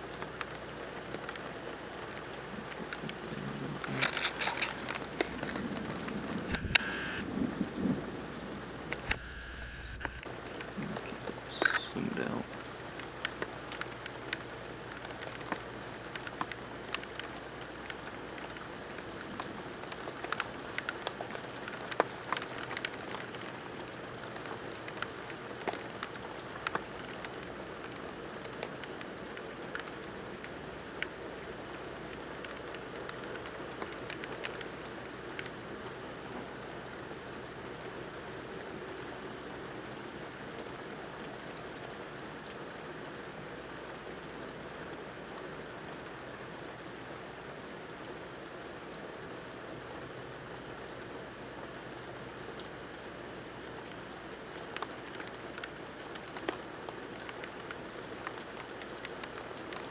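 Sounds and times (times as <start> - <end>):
steady rain falling: 0.0 - 9.0, 10.4 - 59.9
sharp drop ticks: 6.5 - 7.2, 9.1 - 10.2.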